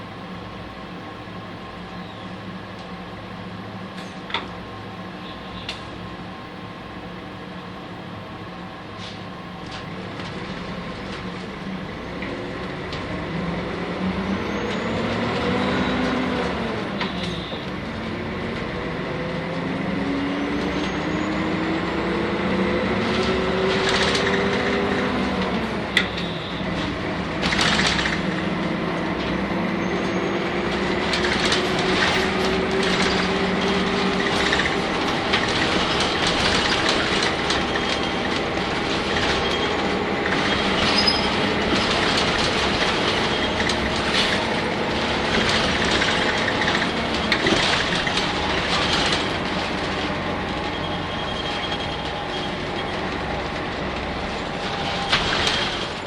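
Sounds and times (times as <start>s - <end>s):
bus engine running: 0.0s - 56.0s
bus body clicks and rattles: 3.9s - 4.6s, 9.0s - 11.6s, 22.9s - 56.0s.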